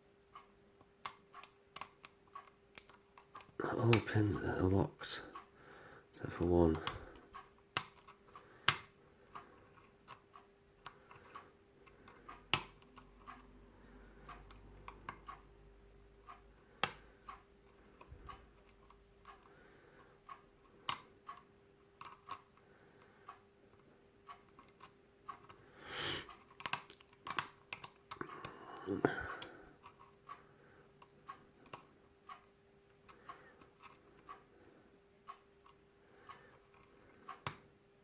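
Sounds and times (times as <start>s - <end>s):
faint steady hum: 0.0s - 38.0s.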